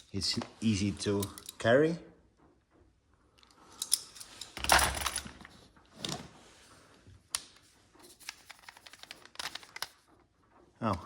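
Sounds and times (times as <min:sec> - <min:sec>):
tools rustling and clattering in bag: 0:03.6 - 0:06.7, 0:07.6 - 0:10.6.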